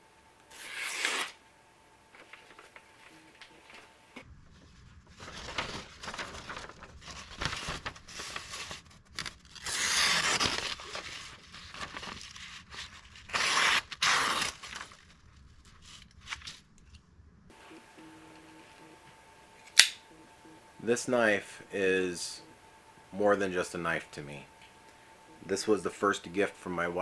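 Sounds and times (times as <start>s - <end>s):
knife slicing paper: 0.5s - 1.4s, 13.2s - 14.9s
paper rustling: 2.1s - 9.6s, 10.3s - 16.7s.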